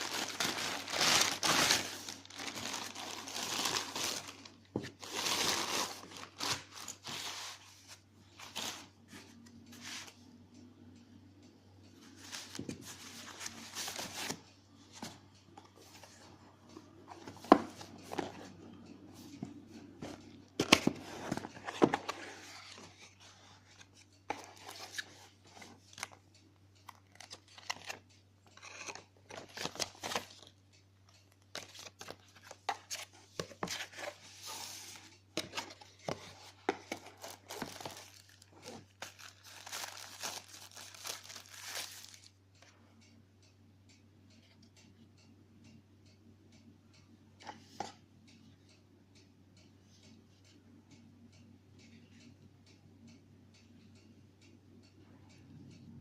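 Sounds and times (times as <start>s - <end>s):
packaging tearing and crinkling: 39.0s - 42.2s.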